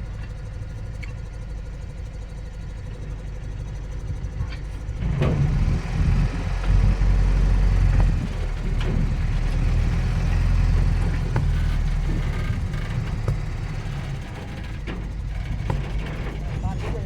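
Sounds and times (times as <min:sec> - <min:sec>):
diesel engine deep rumble: 0:00.0 - 0:17.0
sharp knocks: 0:06.6 - 0:17.0.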